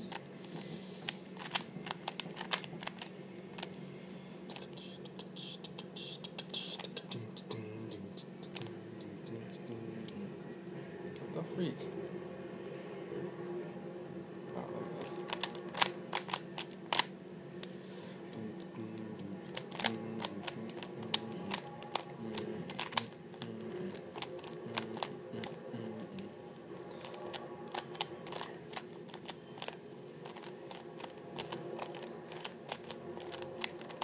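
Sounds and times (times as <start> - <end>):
faint steady hum: 0.0 - 34.0
puzzle cube clicking: 0.1 - 3.7, 6.4 - 7.0, 15.1 - 17.1, 18.6 - 34.0.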